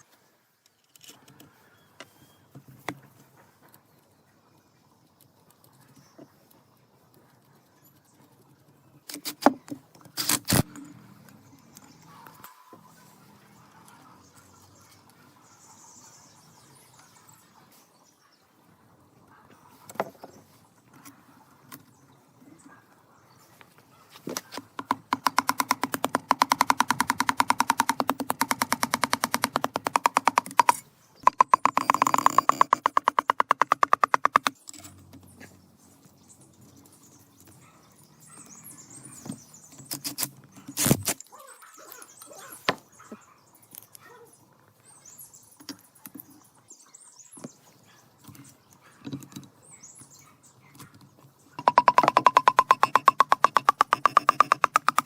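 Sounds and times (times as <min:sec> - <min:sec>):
fast tool clicks: 0:10.1 - 0:10.7, 0:24.7 - 0:34.9, 0:51.6 - 0:55.0
sharp knocks: 0:51.6 - 0:55.0.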